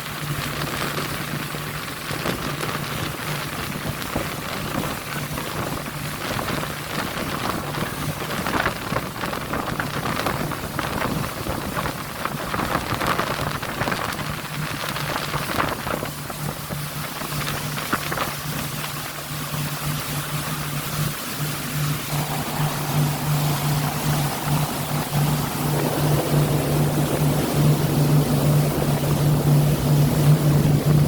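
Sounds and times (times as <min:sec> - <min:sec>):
surf washing and breaking: 0:00.0 - 0:31.0
low hum: 0:19.0 - 0:31.0.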